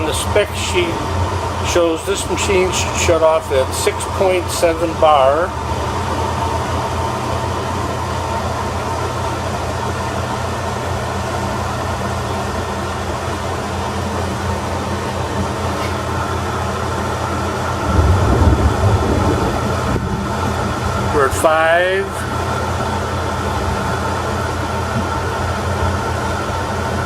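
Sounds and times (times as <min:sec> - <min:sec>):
air compressor running: 0:00.0 - 0:27.0
low rumble: 0:17.7 - 0:21.4.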